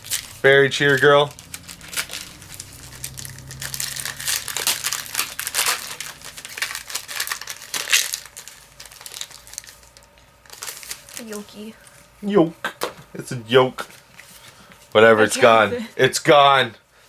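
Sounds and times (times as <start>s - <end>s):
foil wrappers crinkling and tearing: 0.0s - 12.0s.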